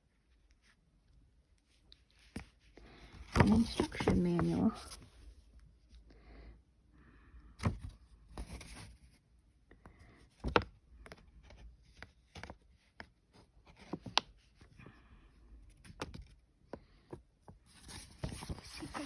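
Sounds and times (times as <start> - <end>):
paper booklet rustling: 1.6 - 5.4, 17.6 - 19.0.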